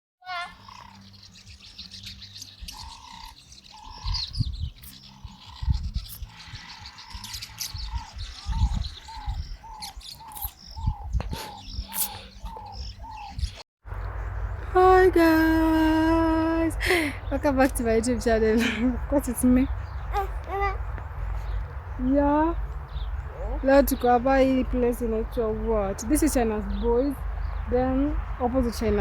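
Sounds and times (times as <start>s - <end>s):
higher bird chirps: 0.2s - 29.0s
low rumbles: 10.6s - 29.0s.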